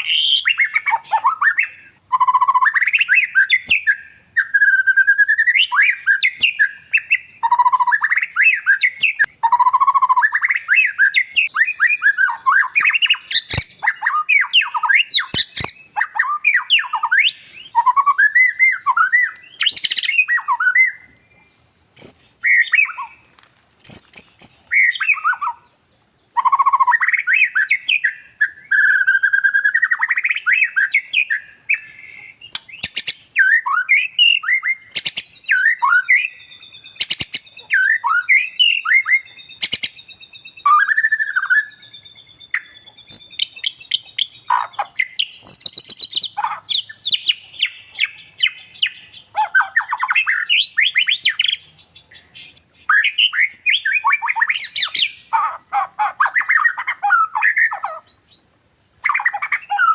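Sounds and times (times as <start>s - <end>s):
bird singing whistles and trills: 0.0s - 59.9s
sharp clicks: 13.3s - 13.8s, 15.3s - 15.8s.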